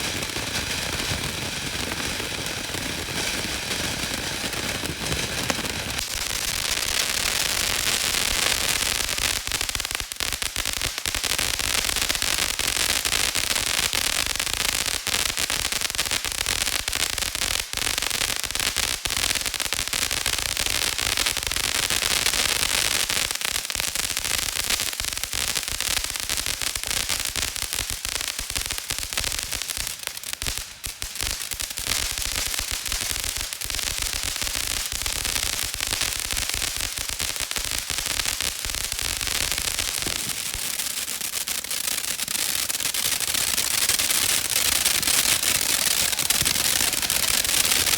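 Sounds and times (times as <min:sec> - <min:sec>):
firework fountain hissing and crackling: 0:00.0 - 0:47.9.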